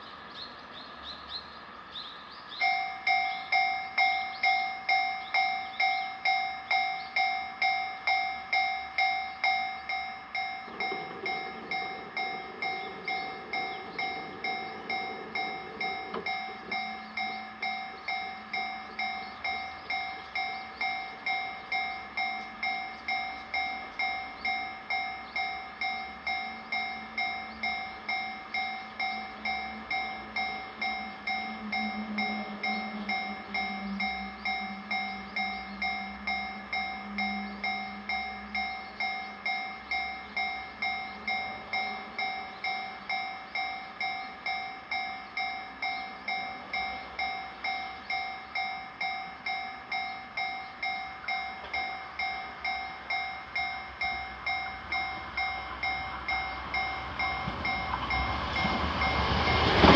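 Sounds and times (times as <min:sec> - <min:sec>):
level crossing warning bell: 0:02.6 - 0:59.9
low rumble: 0:07.7 - 0:44.1.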